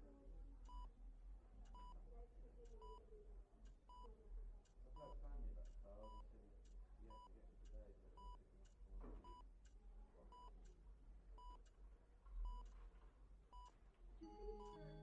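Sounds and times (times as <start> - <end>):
heart monitor beeping: 9.2 - 9.5, 11.4 - 11.6, 12.4 - 12.8, 13.5 - 15.0.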